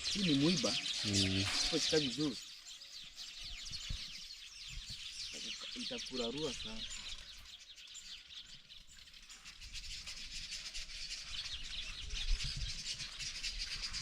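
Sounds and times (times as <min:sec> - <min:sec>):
small birds chirping: 0:00.0 - 0:14.0.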